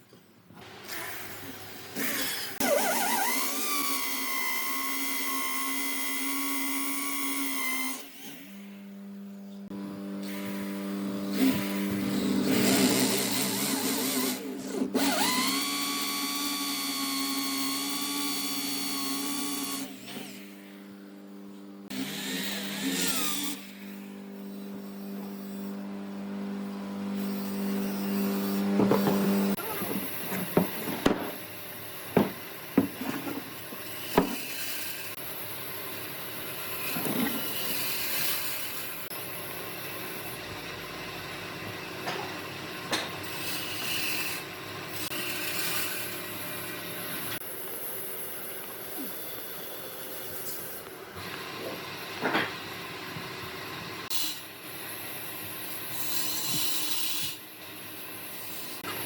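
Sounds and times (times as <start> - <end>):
power tool motor hum: 9.7 - 20.9, 21.9 - 35.3
high-pitched tool whine: 15.0 - 31.4
sharp knocks: 32.2 - 33.4.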